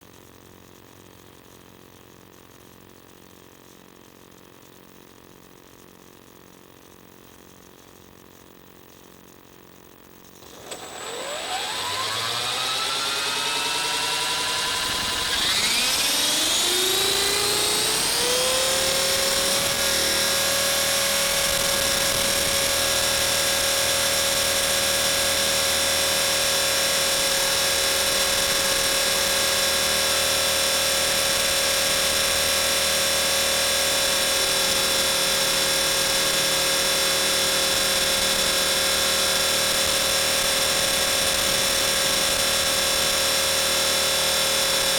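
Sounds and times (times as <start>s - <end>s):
helicopter rotor motor whine: 10.4s - 44.9s.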